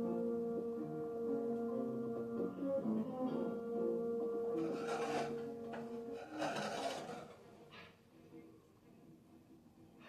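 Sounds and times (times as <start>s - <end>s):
plucked string background music: 0.0s - 7.9s.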